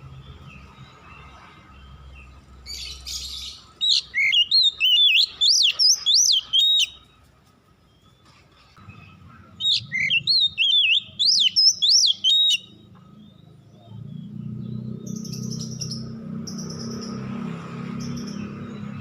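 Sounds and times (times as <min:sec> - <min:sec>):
bird singing whistled phrases: 0:02.8 - 0:07.1, 0:09.6 - 0:12.8.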